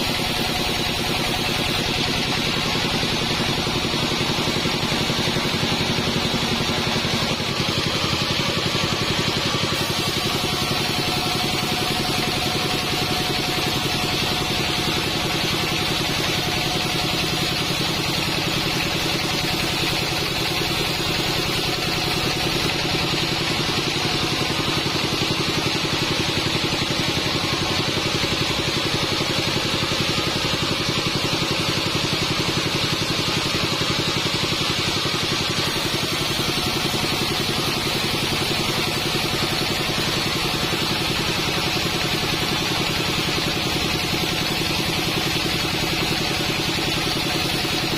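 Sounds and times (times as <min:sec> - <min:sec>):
bandsaw mechanical drone: 0:00.0 - 0:47.9.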